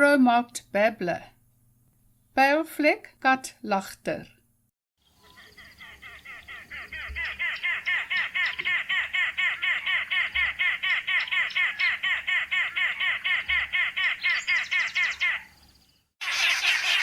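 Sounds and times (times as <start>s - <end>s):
bird chattering call: 5.2s - 15.6s, 16.2s - 17.0s.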